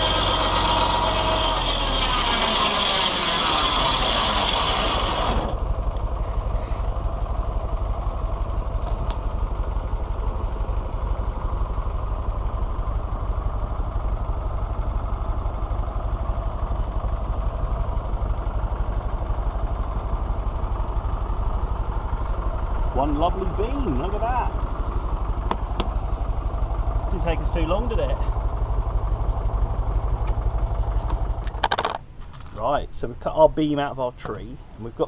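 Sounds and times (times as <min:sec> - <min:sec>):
circular saw cutting log: 0:00.0 - 0:06.9
tractor engine running: 0:00.0 - 0:35.0.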